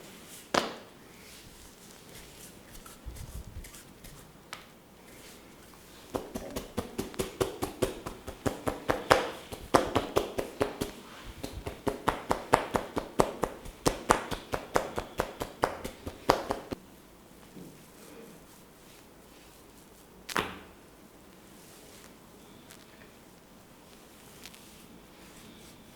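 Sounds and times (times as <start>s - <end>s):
hands slapping body: 6.1s - 16.8s.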